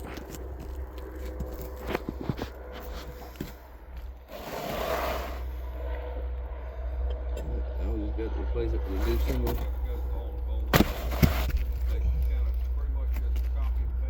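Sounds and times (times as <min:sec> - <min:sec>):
shingle scraping and knocking: 0:00.0 - 0:05.5, 0:09.0 - 0:09.9, 0:10.6 - 0:13.7.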